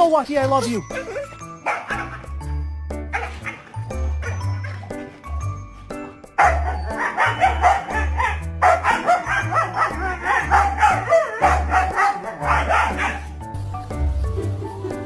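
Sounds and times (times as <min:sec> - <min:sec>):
background music with bass line: 0:00.0 - 0:15.0
dog barking rapidly: 0:00.9 - 0:02.3, 0:03.1 - 0:04.8, 0:06.4 - 0:13.3.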